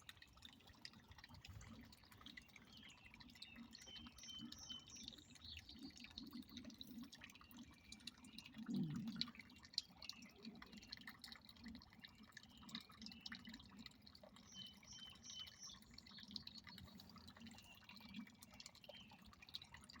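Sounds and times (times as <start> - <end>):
water trickling and dripping: 0.0 - 20.0.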